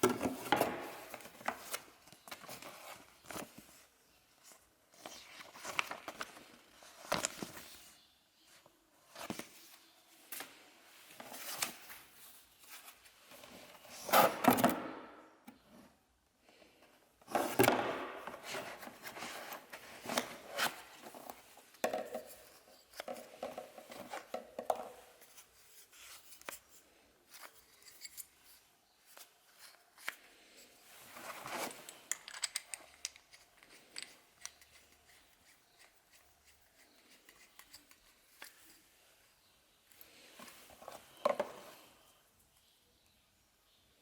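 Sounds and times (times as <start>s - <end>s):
plastic parts clicking: 31.8s - 36.2s.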